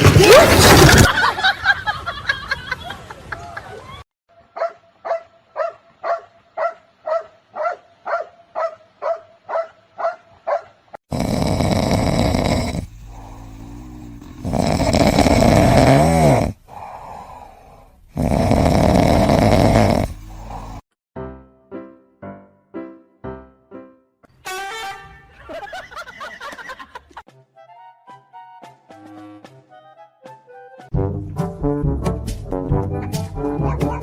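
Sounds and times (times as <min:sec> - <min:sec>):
dog barking: 0:04.5 - 0:10.8, 0:33.5 - 0:34.0.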